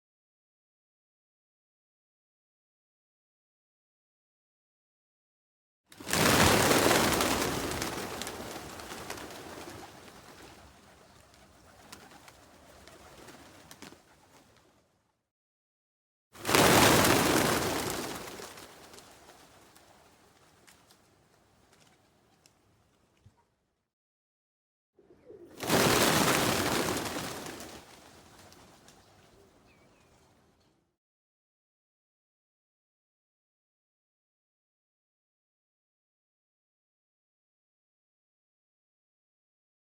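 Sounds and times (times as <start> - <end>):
pigeon wings flapping: 5.9 - 14.8, 16.4 - 22.6, 25.5 - 29.5.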